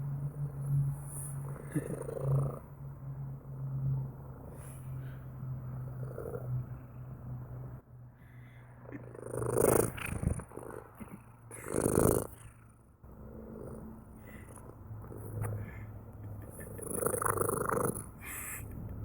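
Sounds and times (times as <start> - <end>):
cat purring: 0.9 - 2.8, 5.8 - 7.0, 8.8 - 18.6.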